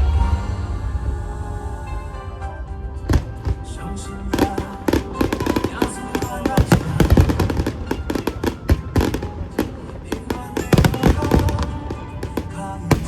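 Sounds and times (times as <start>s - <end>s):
music with held notes: 0.0s - 13.0s
fireworks bangs: 3.0s - 13.0s.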